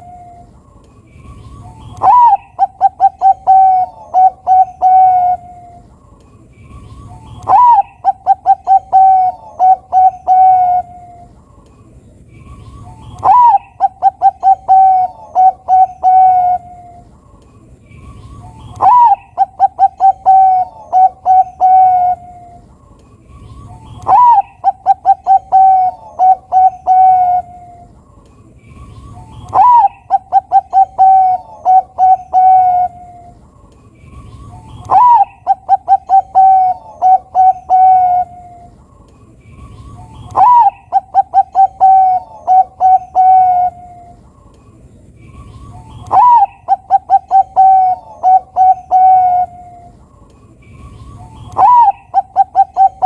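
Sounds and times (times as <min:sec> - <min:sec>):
dove cooing: 0:01.4 - 0:05.9, 0:07.0 - 0:11.4, 0:12.7 - 0:17.1, 0:18.2 - 0:22.7, 0:23.5 - 0:28.0, 0:28.9 - 0:33.4, 0:34.2 - 0:38.8, 0:39.8 - 0:44.2, 0:45.6 - 0:49.9, 0:50.8 - 0:53.0.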